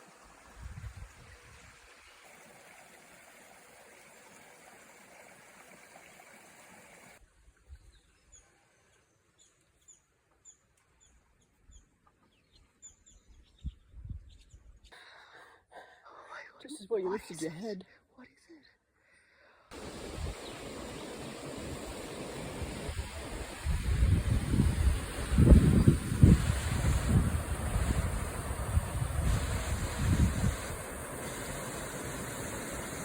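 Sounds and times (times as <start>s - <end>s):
creek running: 0.0s - 7.2s, 19.7s - 33.0s
small birds chirping: 19.9s - 21.4s.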